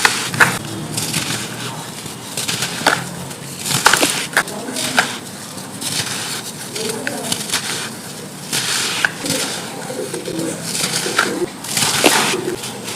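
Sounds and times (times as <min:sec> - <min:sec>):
sand crumbling and crunching: 0:00.0 - 0:12.9
sand lumps cracking: 0:00.0 - 0:12.9.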